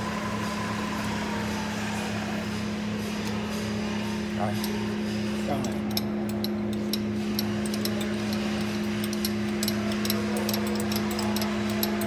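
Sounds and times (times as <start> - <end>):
metallic ticks and clinks: 5.6 - 12.0.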